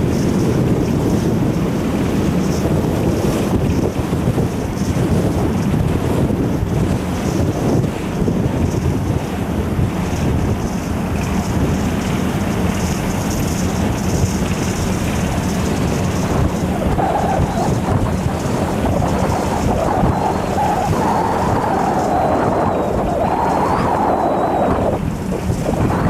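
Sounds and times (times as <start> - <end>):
wind buffeting microphone: 0.0 - 26.0
low engine drone: 11.3 - 26.0
higher hum: 15.7 - 26.0.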